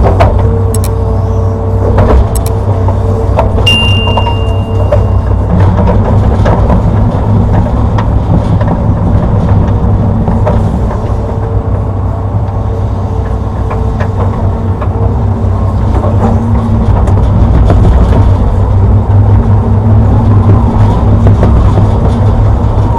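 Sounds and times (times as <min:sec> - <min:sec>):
excavator diesel engine running: 0:00.0 - 0:22.9.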